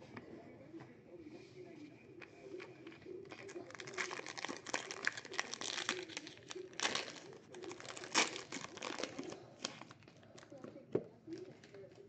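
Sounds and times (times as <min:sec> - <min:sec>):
wrappers crinkling and tearing: 0:03.2 - 0:10.6.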